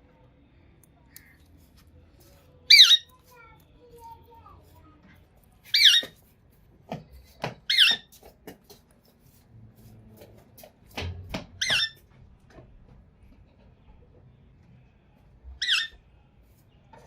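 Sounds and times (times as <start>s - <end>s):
parakeet shrill calls: 2.7s - 3.1s, 5.7s - 6.2s, 7.7s - 8.1s, 11.6s - 12.0s, 15.6s - 16.0s.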